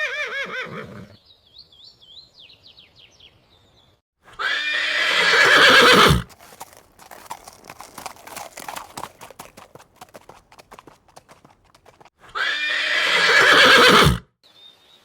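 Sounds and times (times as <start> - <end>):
horse whinny: 0.0 - 1.2, 4.3 - 14.3
horse hooves clip-clopping: 5.4 - 12.1.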